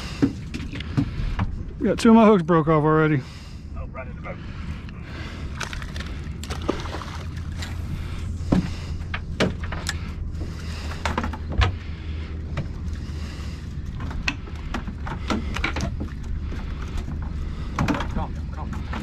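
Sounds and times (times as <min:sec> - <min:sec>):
boat motor humming: 0:00.0 - 0:19.0
knocks and clatter on deck: 0:17.1 - 0:19.0.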